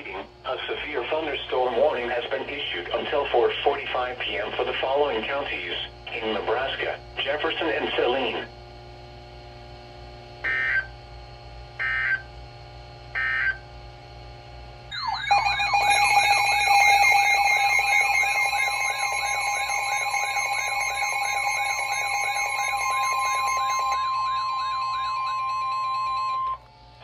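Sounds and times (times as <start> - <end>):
warbling electronic alert siren: 11.8 - 12.2, 13.2 - 13.6, 14.9 - 26.7
data-burst squawks: 14.9 - 26.6
steady alert tone: 14.9 - 26.6.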